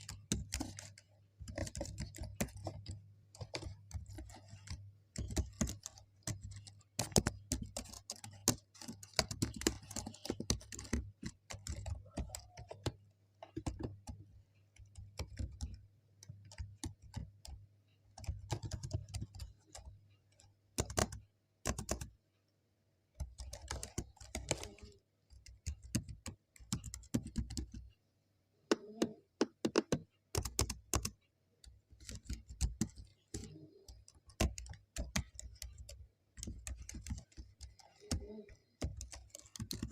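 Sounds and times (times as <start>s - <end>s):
computer keyboard key clicks: 23.2s - 27.8s, 28.7s - 39.9s.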